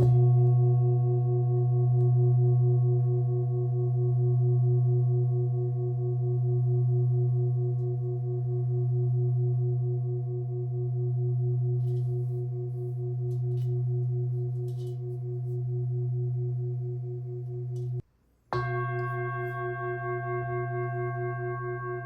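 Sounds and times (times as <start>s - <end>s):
singing bowl ringing: 18.6s - 22.0s.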